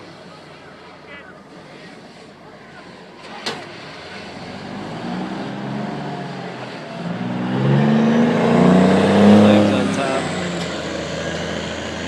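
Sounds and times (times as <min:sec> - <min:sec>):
car engine revving: 0:03.7 - 0:12.0.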